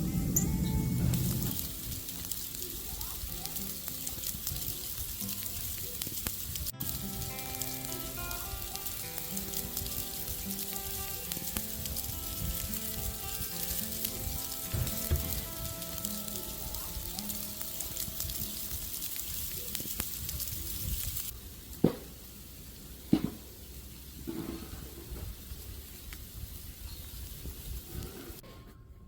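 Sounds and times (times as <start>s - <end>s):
soft music: 0.0s - 20.1s
crackling hiss: 0.0s - 28.4s.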